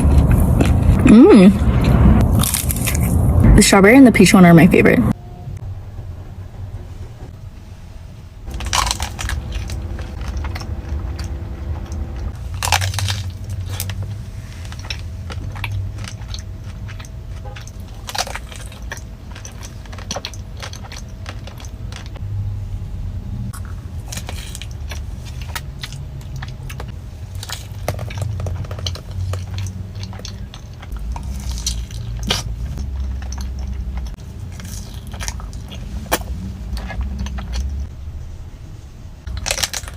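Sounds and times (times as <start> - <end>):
steady low rumble: 0.0 - 39.9
chewing and crunching: 2.3 - 3.2, 8.5 - 22.2, 23.5 - 37.9, 39.2 - 39.9.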